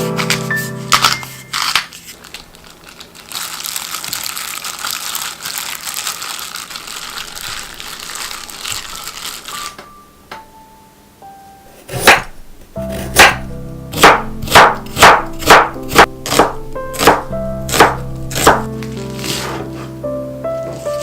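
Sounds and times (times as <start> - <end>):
background music: 0.0 - 1.8, 12.8 - 21.0
knife chopping on cutting board: 11.9 - 13.4, 14.0 - 19.9.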